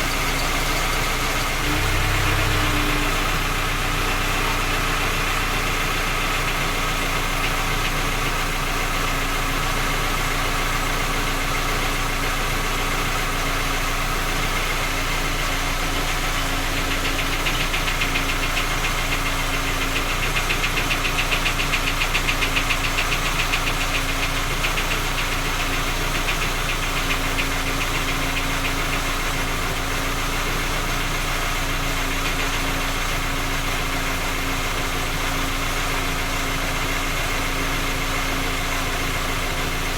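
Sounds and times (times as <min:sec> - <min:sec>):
engine running with metallic knock: 0:15.1 - 0:33.6.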